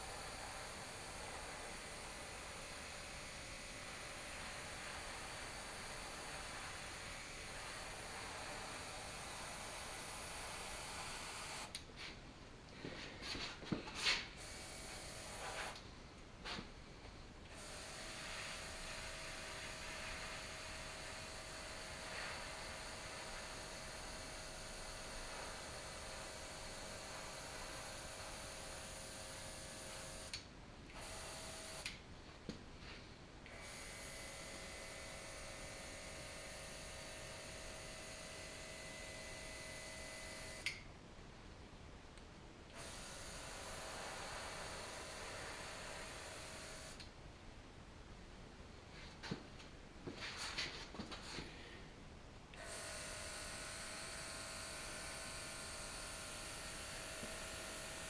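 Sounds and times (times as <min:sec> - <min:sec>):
air compressor running: 0:00.0 - 0:11.8, 0:14.4 - 0:15.8, 0:17.5 - 0:30.4, 0:31.0 - 0:31.9, 0:33.5 - 0:40.7, 0:42.7 - 0:47.0, 0:52.6 - 0:58.0
faint hiss and hum: 0:00.0 - 0:58.0.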